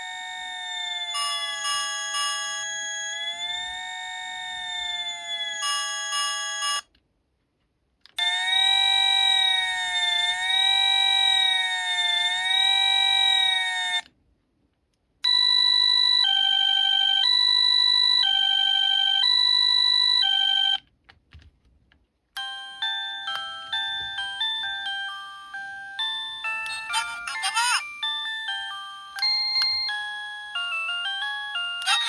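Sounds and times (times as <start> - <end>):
electronic wail siren: 0.0 - 6.7, 8.2 - 14.1, 15.3 - 20.8
two-tone hi-lo siren: 0.0 - 6.8, 8.2 - 14.1, 15.3 - 20.8.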